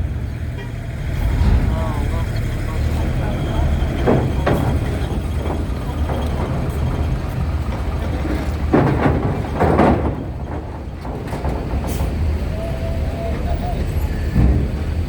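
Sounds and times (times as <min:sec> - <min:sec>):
heavy vehicle engines rumbling: 0:00.0 - 0:15.0
rushes of noise: 0:01.0 - 0:07.2.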